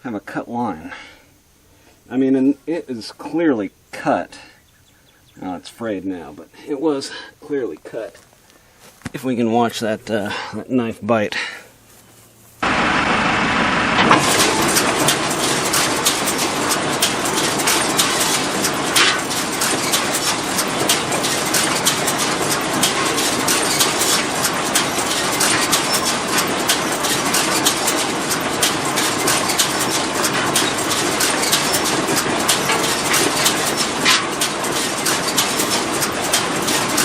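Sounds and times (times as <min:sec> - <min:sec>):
hay baler mechanical clatter: 0:12.6 - 0:37.0.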